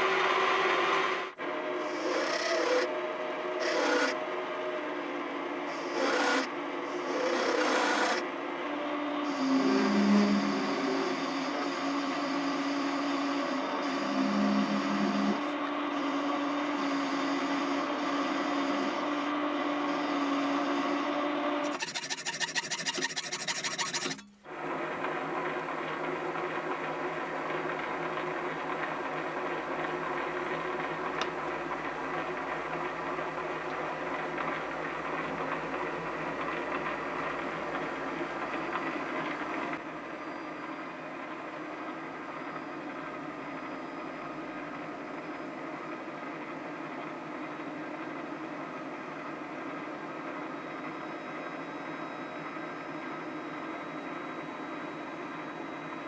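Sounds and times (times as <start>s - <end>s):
machine tool motor and gear hum: 0.0s - 39.8s
machining noise: 5.7s - 8.2s, 9.3s - 21.0s.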